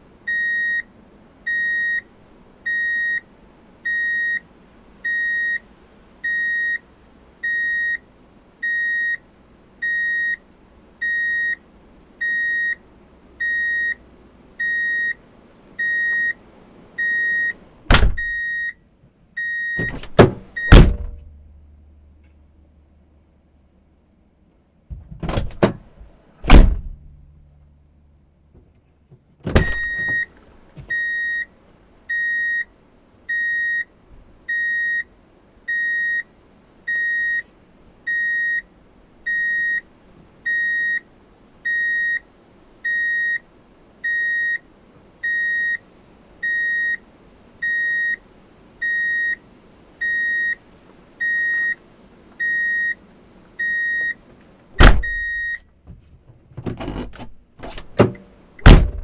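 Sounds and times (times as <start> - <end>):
reverse warning beeper: 1.5 - 2.1, 5.1 - 5.6, 6.3 - 6.8, 7.4 - 8.0, 9.8 - 10.4, 11.0 - 11.6, 13.4 - 14.0, 14.6 - 15.2, 15.8 - 16.4, 17.0 - 18.8, 29.6 - 30.3, 30.9 - 31.5, 54.8 - 55.6
knocks and a thump: 17.9 - 18.4, 19.8 - 21.6, 24.9 - 27.4, 28.6 - 30.2, 54.8 - 59.0.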